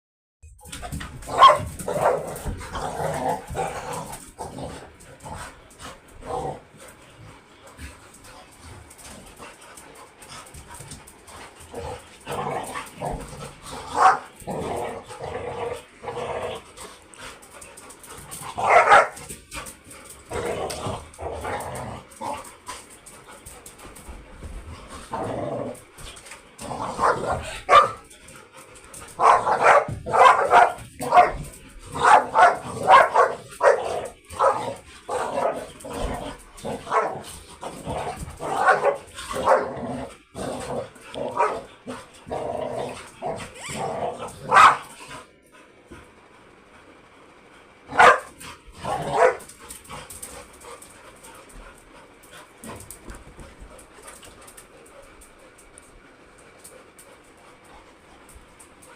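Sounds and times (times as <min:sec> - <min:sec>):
dogs barking: 0:01.3 - 0:03.0, 0:13.9 - 0:14.4, 0:18.6 - 0:19.2, 0:27.0 - 0:28.1, 0:29.2 - 0:35.6, 0:36.8 - 0:37.2, 0:38.4 - 0:39.8, 0:44.5 - 0:44.9, 0:47.9 - 0:49.5.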